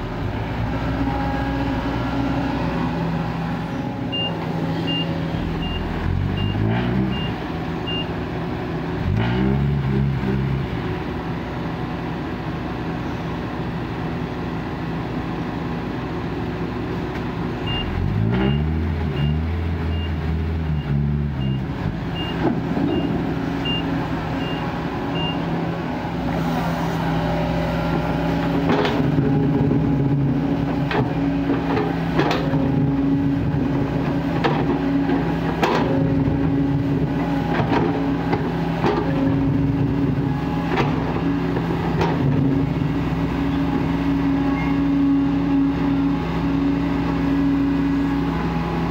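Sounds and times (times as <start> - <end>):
diesel engine revving: 0.0 - 48.9
reversing alarm beeping: 4.1 - 8.1, 22.2 - 25.4.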